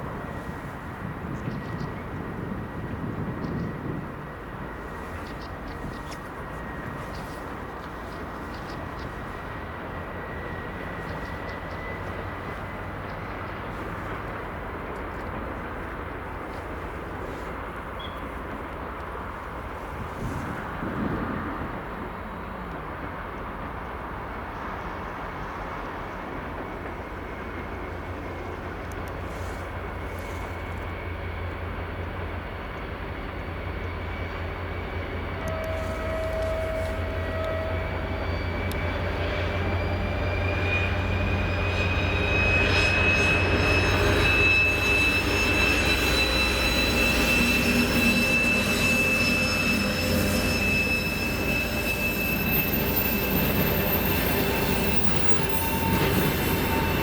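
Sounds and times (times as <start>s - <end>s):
diesel locomotive rumble: 0.0s - 57.0s
turbocharger high whistle: 35.4s - 57.0s.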